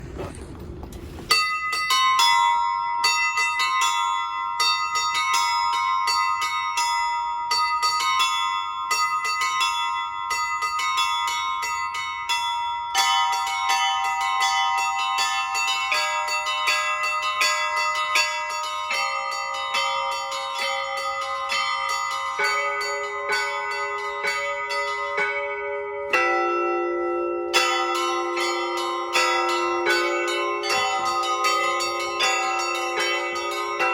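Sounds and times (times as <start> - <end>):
deep church bells: 0.0 - 33.9
small high church bells chiming: 1.2 - 33.9.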